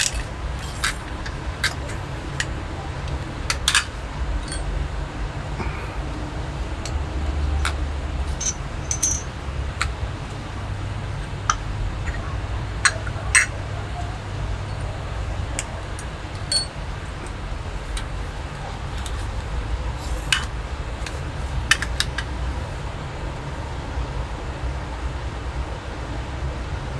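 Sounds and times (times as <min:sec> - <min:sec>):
light metallic clicks and clinks: 0:00.0 - 0:04.9, 0:06.8 - 0:10.0, 0:12.8 - 0:15.0, 0:15.6 - 0:22.3.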